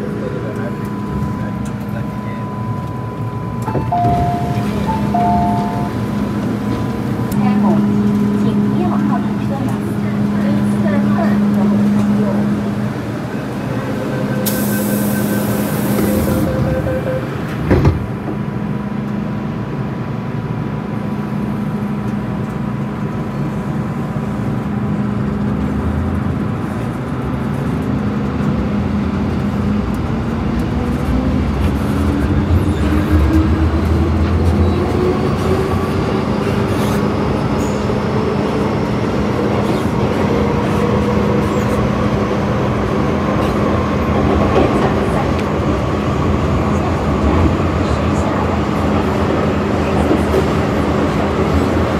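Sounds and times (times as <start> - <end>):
train traction motor whine: 0.0 - 18.3.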